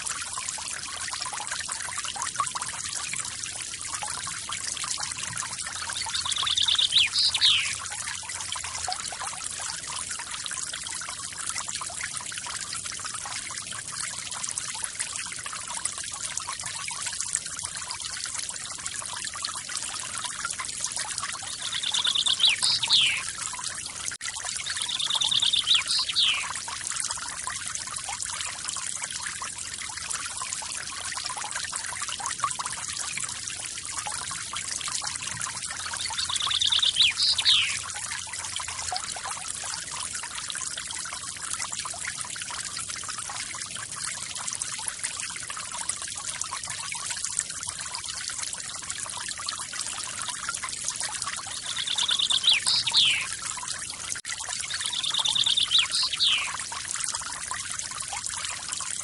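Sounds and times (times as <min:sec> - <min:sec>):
waterfall splashing and trickling: 0:00.0 - 0:59.0
bird trilling and whistling: 0:06.0 - 0:07.8, 0:21.6 - 0:23.2, 0:24.7 - 0:26.5, 0:36.0 - 0:37.8, 0:51.6 - 0:53.3, 0:54.7 - 0:56.5.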